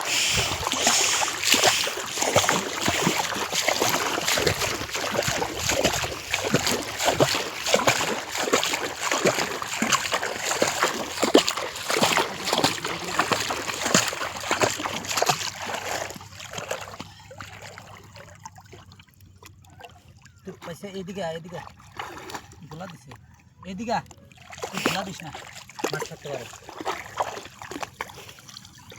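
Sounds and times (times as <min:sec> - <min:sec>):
people wading and splashing in water: 0:00.0 - 0:28.9.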